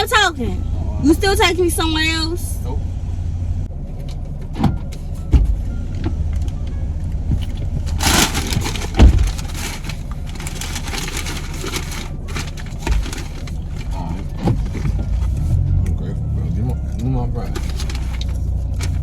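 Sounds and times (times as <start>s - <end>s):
low rumble inside car: 0.0s - 19.0s
rustling burst: 7.9s - 13.9s
loud thump: 8.0s - 9.5s.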